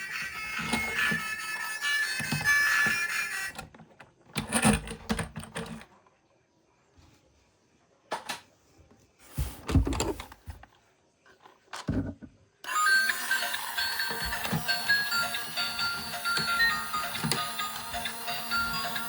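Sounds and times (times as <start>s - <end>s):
music: 0.0s - 3.6s, 12.7s - 19.0s.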